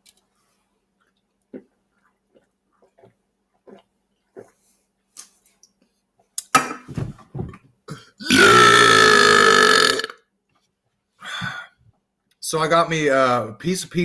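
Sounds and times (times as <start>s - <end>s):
man belching loudly: 8.2s - 10.2s.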